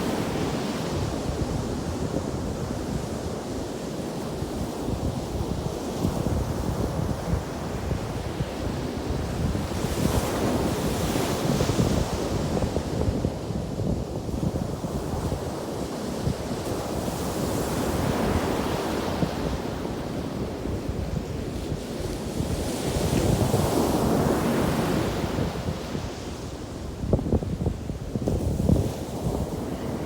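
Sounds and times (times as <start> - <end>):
wind buffeting microphone: 0.0 - 30.0
surf breaking on a beach: 15.0 - 30.0.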